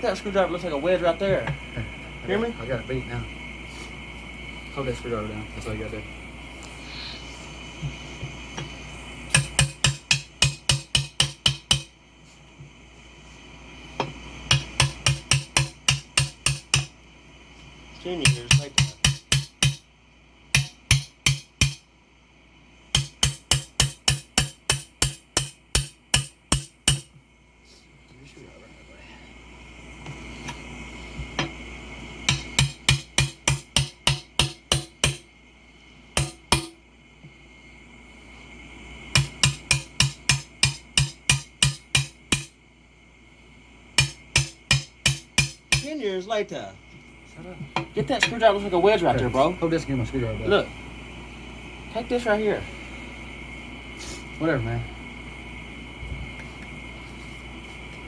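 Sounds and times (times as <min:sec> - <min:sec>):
hammer strikes ringing on metal: 0:09.3 - 0:11.9, 0:14.5 - 0:16.9, 0:18.2 - 0:19.8, 0:20.5 - 0:21.8, 0:22.9 - 0:27.1, 0:32.3 - 0:35.3, 0:36.2 - 0:36.8, 0:39.1 - 0:42.5, 0:44.0 - 0:45.9.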